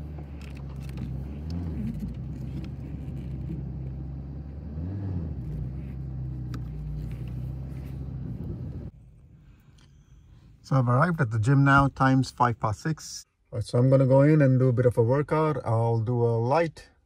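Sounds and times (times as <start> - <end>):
car engine humming: 0.0 - 13.0.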